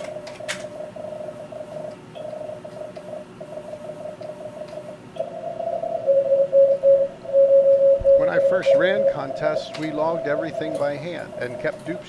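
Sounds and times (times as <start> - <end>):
morse code tones: 0.7 - 12.0.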